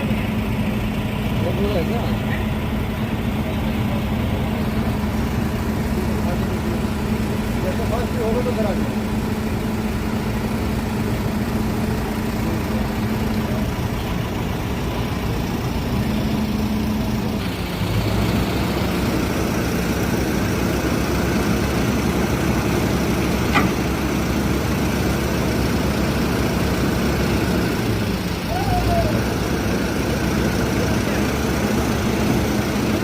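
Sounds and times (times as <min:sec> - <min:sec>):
heavy machine engine running: 0:00.0 - 0:33.0
sharp click: 0:23.5 - 0:23.8.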